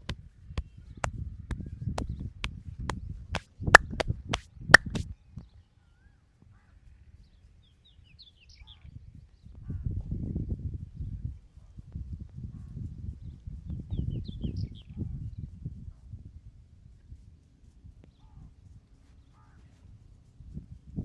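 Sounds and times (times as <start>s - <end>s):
hands slapping body: 3.8s - 4.1s, 4.8s - 5.0s
loud smacks: 3.8s - 4.1s, 4.8s - 5.0s.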